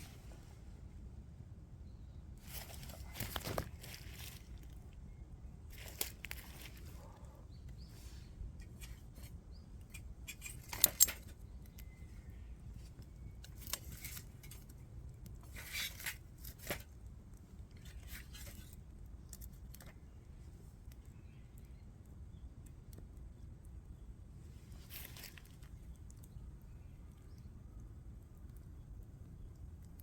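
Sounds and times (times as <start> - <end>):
small objects clicking and rustling: 5.7 - 6.9, 8.6 - 12.0, 13.0 - 17.0.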